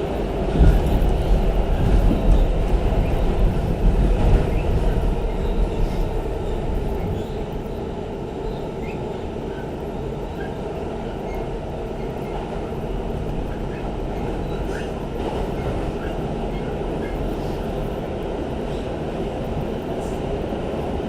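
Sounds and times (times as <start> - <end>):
subway train wheels rumbling: 0.0 - 21.0.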